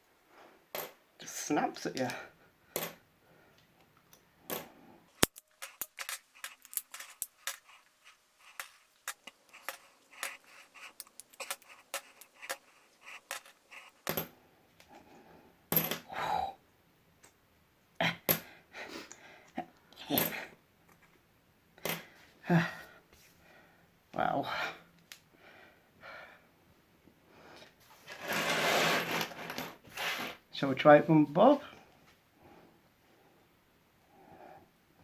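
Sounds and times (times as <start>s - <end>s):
coins clicking onto a magnet: 5.2s - 7.6s.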